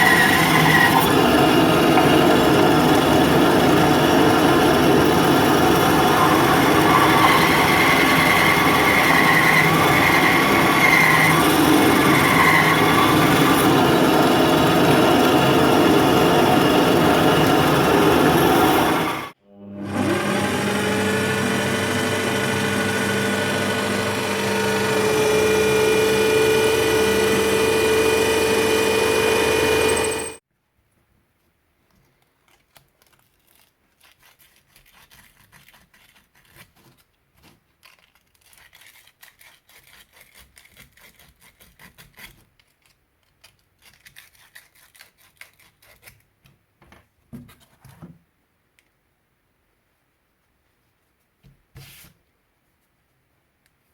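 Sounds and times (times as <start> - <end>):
woodworking machine motor whine: 0.0 - 30.4.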